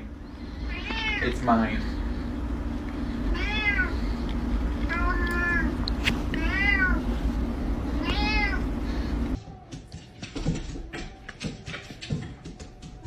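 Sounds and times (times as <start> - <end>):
steady low hum: 0.0 - 10.9
cat meowing: 0.7 - 1.2, 3.3 - 3.9, 4.9 - 5.7, 6.4 - 7.0, 8.0 - 8.6.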